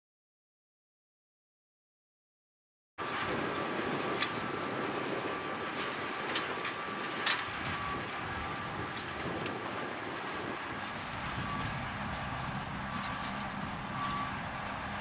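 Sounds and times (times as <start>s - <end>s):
tractor engine droning: 3.0s - 15.0s
sharp metallic clicks and knocks: 3.1s - 9.6s, 12.9s - 14.3s.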